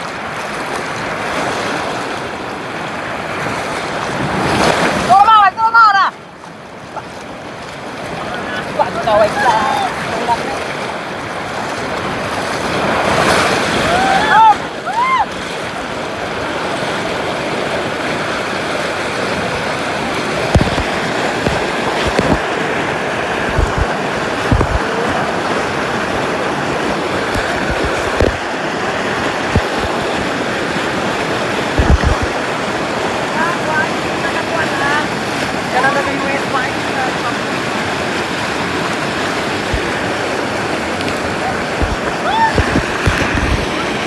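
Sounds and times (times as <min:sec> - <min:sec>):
rushing river water: 0:00.0 - 0:44.0
dull low bumps: 0:20.4 - 0:25.4, 0:26.0 - 0:28.6, 0:29.2 - 0:30.6.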